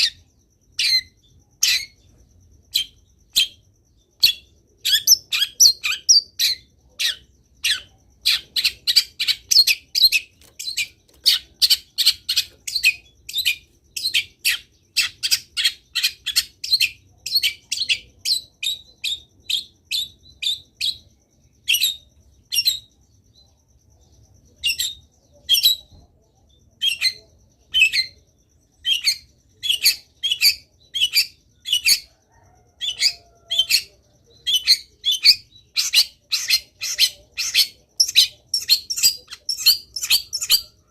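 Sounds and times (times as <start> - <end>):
bird harsh chattering song: 0.0 - 23.3, 24.2 - 40.9.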